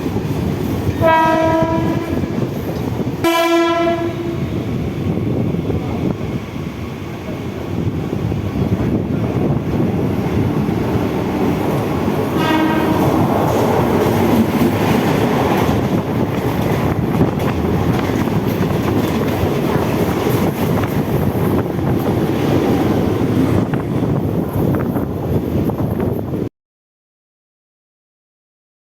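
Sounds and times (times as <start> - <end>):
train wheels rumbling on rails: 0.0 - 26.5
train horn blast: 1.0 - 2.4, 3.2 - 4.6, 12.3 - 13.7.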